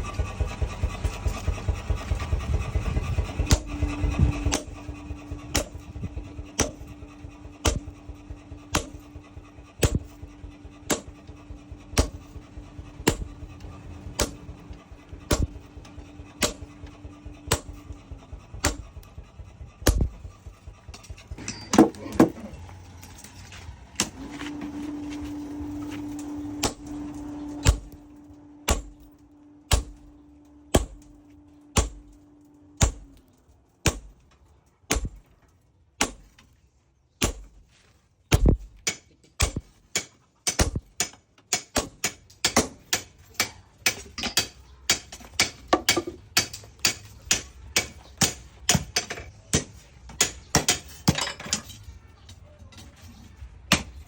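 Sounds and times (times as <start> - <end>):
steady hum: 0.0 - 35.3
hammer striking steel on anvil: 3.2 - 22.4, 24.0 - 33.2, 33.8 - 34.3, 34.9 - 35.3, 37.2 - 37.6, 38.3 - 51.9, 53.7 - 54.0.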